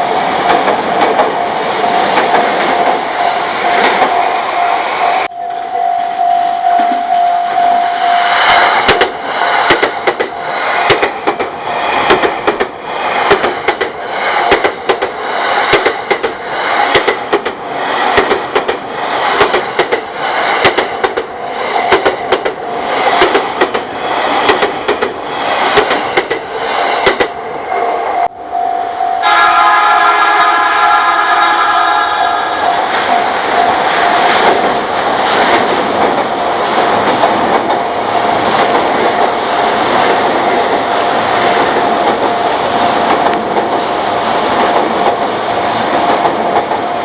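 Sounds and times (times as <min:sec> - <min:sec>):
crossing warning bell: 0:01.4 - 0:08.9, 0:27.8 - 0:34.8
train wheels clattering: 0:08.4 - 0:27.4.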